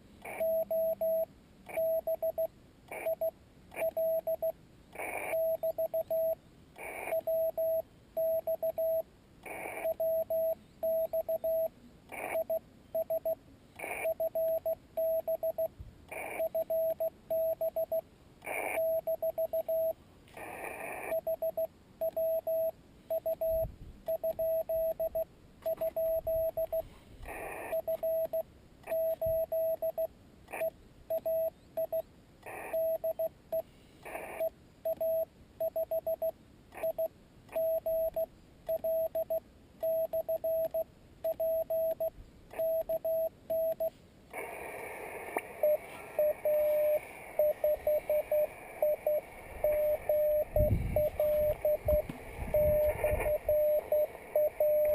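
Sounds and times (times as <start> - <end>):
radio hiss: 0.1 - 2.2, 2.9 - 4.2, 4.9 - 7.8, 9.4 - 10.6, 11.5 - 12.6, 13.8 - 14.8, 16.1 - 17.1, 18.4 - 21.7, 25.8 - 29.8, 32.4 - 35.2, 43.6 - 54.9
morse code beeps: 0.3 - 20.0, 21.0 - 33.7, 34.3 - 44.0, 45.6 - 54.9.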